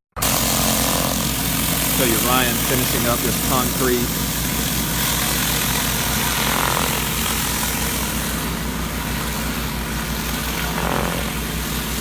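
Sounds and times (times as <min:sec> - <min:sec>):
gas engine running: 0:00.1 - 0:12.0
water spraying on concrete: 0:00.2 - 0:12.0.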